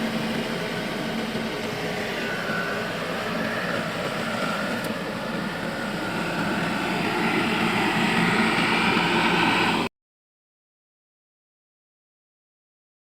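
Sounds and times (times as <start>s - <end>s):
combine harvester running: 0.0s - 9.9s.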